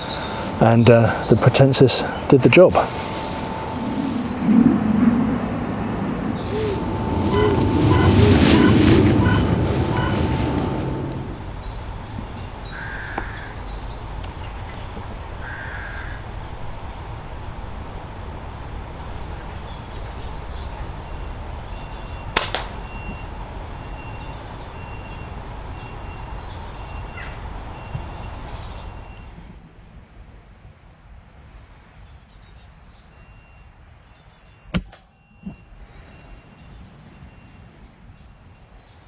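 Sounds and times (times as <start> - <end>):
small birds chirping: 0.0 - 29.2
low rumble of wind: 0.0 - 32.4
crows cawing: 3.8 - 11.4, 12.6 - 13.6, 15.4 - 16.2
air rifle shot: 22.4 - 22.8.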